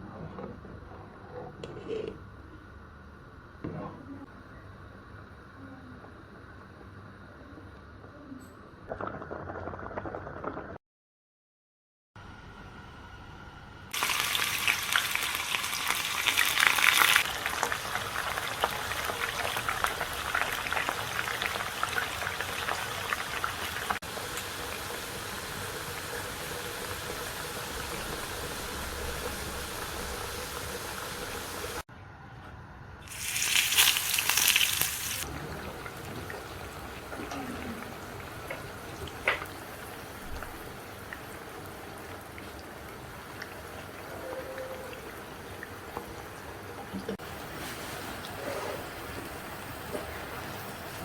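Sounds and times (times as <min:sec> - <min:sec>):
food sizzling in hot oil: 0:13.9 - 0:31.8, 0:33.0 - 0:51.0.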